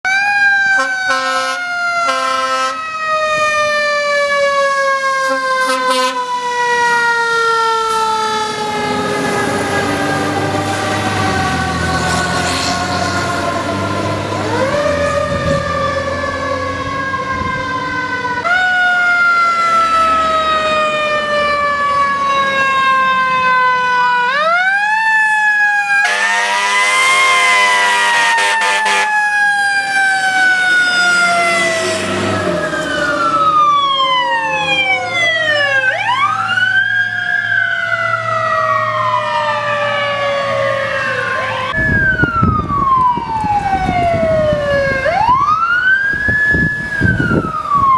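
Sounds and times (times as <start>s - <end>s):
fire engine sirens wailing: 0.0s - 47.9s
horn blast: 0.8s - 2.9s, 5.2s - 6.4s, 26.0s - 29.4s.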